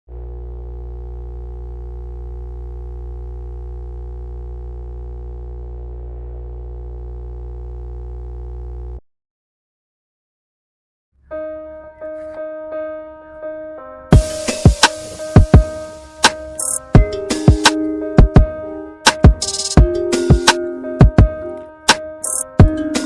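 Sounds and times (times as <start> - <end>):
deep hum: 0.1 - 9.0.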